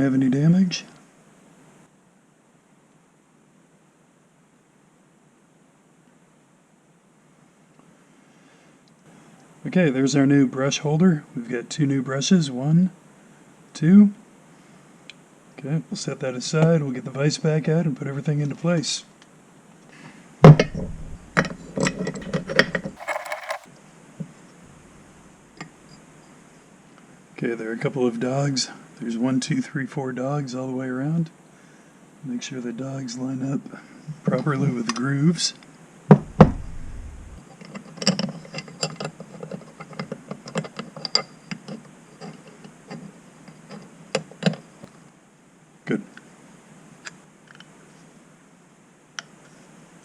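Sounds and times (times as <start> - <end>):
metal clicking and rattling: 22.2 - 23.7.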